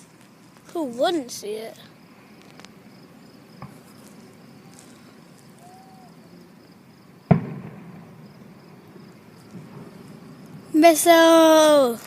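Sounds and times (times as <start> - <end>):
firework bang echoing: 7.2 - 8.8, 9.5 - 10.7
small firework pop: 7.3 - 8.1.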